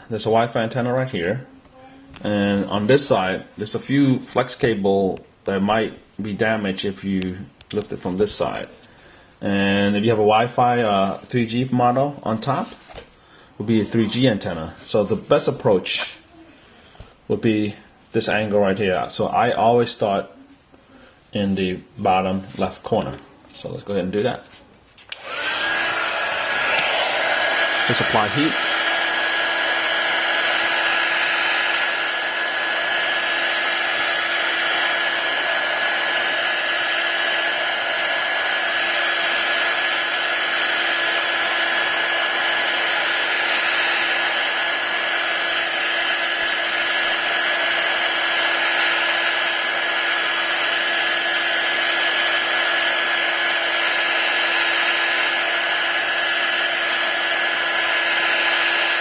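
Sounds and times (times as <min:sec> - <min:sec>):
heat gun fan whining: 0:25.0 - 0:59.0.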